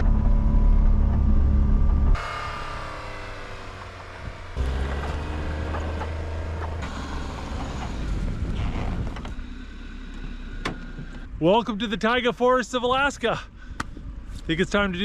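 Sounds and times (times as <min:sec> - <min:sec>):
vehicle engine running steadily: 0:00.0 - 0:15.0.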